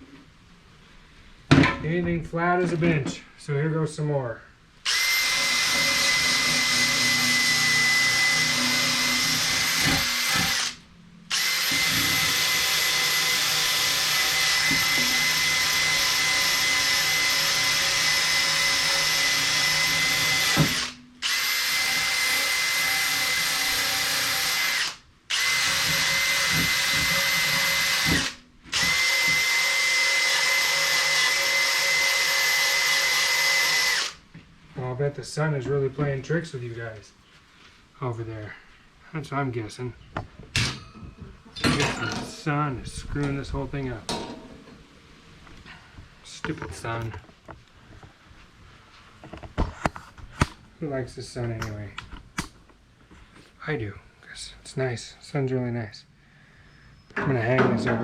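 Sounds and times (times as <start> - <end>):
electric power tool whining: 4.9 - 34.2.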